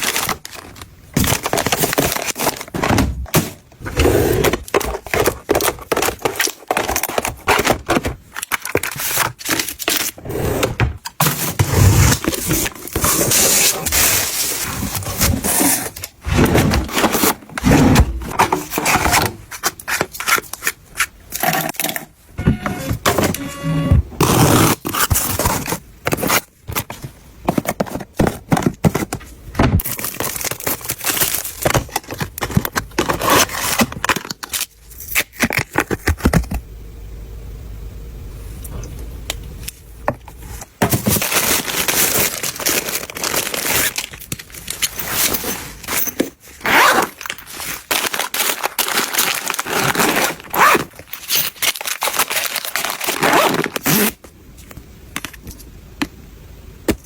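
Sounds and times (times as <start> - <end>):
plastic crinkling: 0.0 - 3.4, 29.8 - 36.3, 40.4 - 54.2
items scraping: 0.0 - 34.6, 39.6 - 55.6
wrappers tearing: 41.1 - 54.2.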